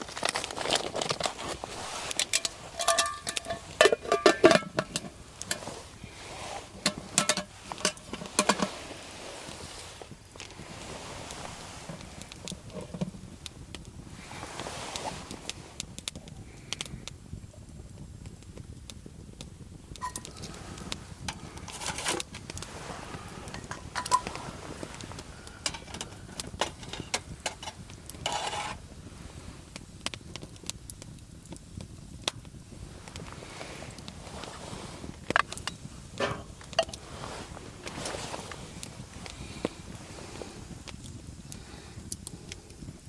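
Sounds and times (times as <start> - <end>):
campfire crackling: 0.0 - 43.0
metal cooking gear clinks: 2.2 - 5.6, 23.5 - 24.3.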